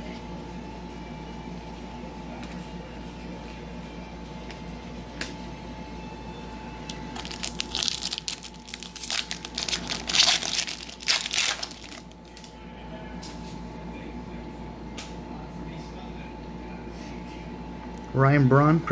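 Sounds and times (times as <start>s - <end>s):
foil wrapper crinkling and tearing: 6.9s - 12.5s.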